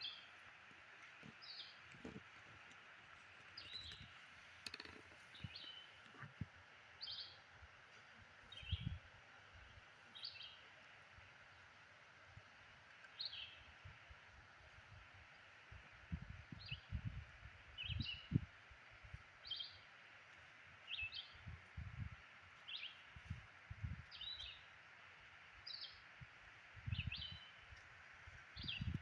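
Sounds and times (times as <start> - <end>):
bird chirping: 3.6 - 4.1.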